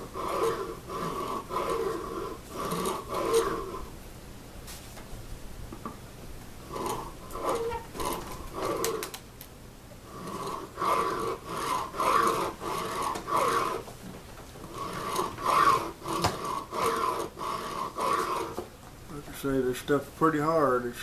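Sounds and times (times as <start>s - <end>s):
file scraping on antler: 0.0s - 3.9s, 6.7s - 9.1s, 10.1s - 13.9s, 14.6s - 18.7s.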